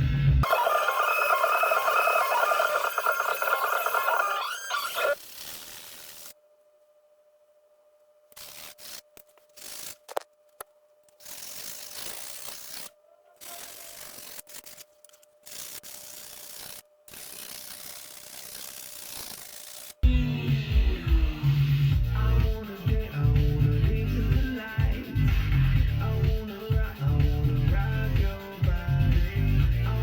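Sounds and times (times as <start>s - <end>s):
blade scraping on whetstone: 0.4s - 6.3s, 8.4s - 10.2s, 11.1s - 20.0s.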